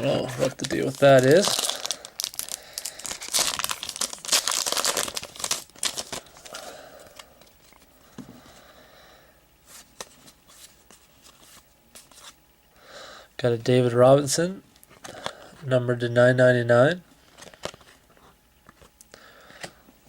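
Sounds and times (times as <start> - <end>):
wrapper tearing and crinkling: 0.0 - 6.7
cards rustling and clicking: 17.2 - 18.0.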